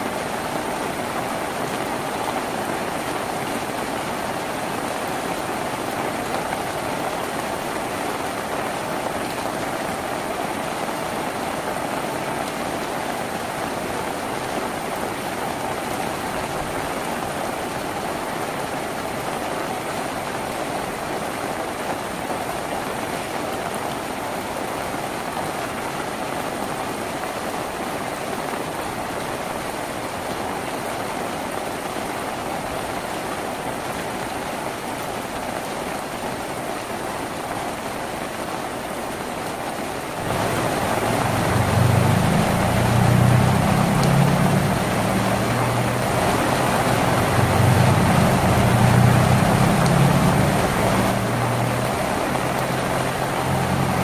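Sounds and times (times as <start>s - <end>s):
rain on a tin roof: 0.0s - 54.0s.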